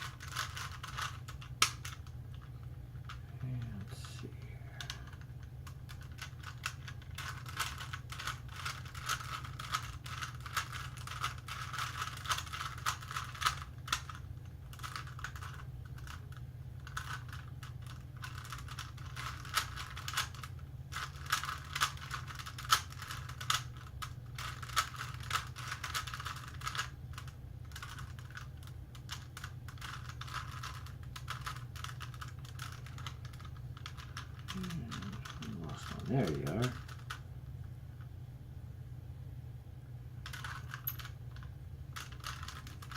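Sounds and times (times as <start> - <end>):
steady low hum: 0.0 - 42.9
puzzle cube clicking: 16.8 - 37.2.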